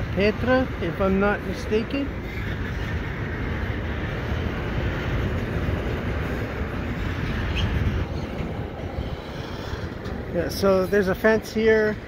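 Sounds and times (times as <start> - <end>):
locomotive rumbling: 0.0 - 12.0.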